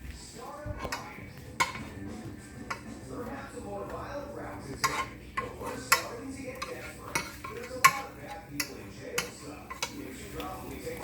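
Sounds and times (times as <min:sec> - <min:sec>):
utensil scraping a frying pan: 0:04.6 - 0:11.0.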